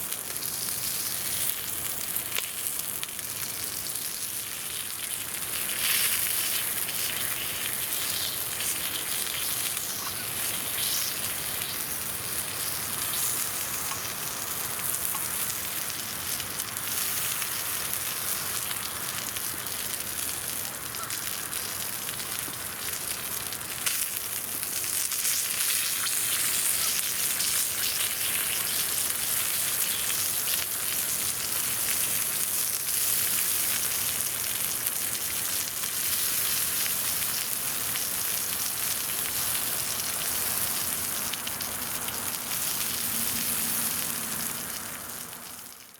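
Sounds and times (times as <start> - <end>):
meat sizzling over campfire: 0.0 - 45.9.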